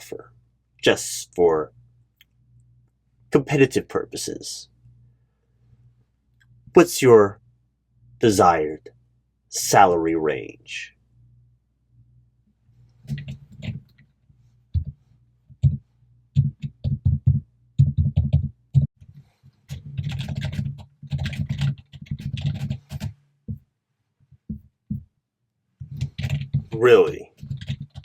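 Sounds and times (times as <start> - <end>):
typing on computer keyboard: 13.0 - 14.1, 16.4 - 18.9, 19.7 - 23.2, 25.8 - 28.0.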